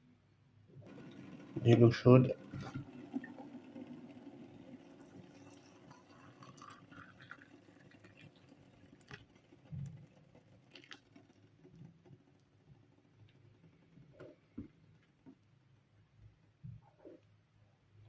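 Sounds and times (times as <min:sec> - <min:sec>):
small clicks: 0:02.4 - 0:15.5.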